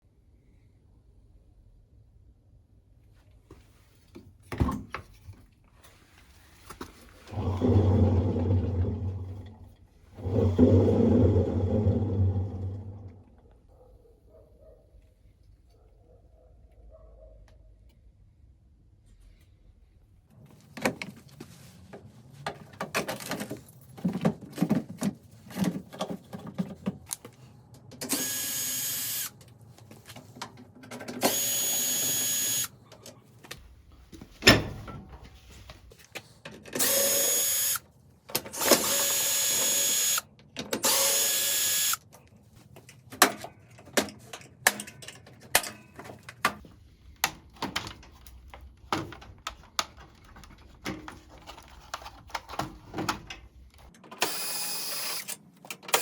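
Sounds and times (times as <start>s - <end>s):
cordless screwdriver whirring: 28.1s - 29.4s, 31.2s - 32.7s, 36.8s - 37.8s, 38.6s - 42.0s, 54.2s - 55.3s
clicks and knocks of tools: 29.4s - 31.5s, 42.0s - 54.4s, 55.2s - 56.0s.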